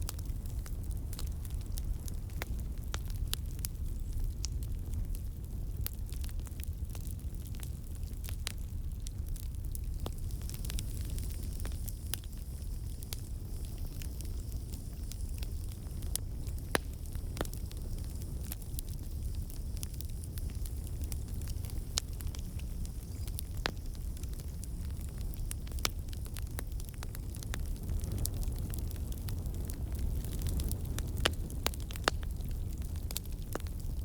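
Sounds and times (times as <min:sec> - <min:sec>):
campfire crackling and popping: 0:00.0 - 0:34.0.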